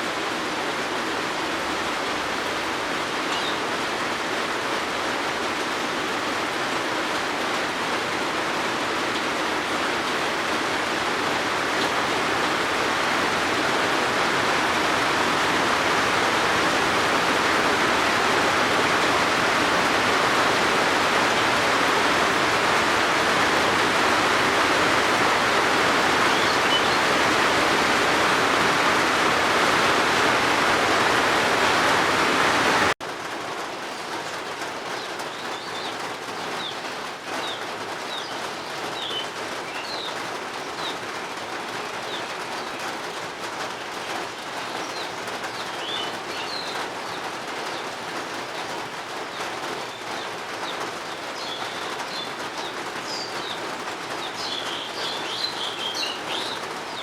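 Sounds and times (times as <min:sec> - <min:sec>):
heavy rain: 0:00.0 - 0:57.0
birds chirping: 0:03.0 - 0:03.8, 0:08.2 - 0:32.8, 0:34.9 - 0:41.1, 0:44.6 - 0:57.0.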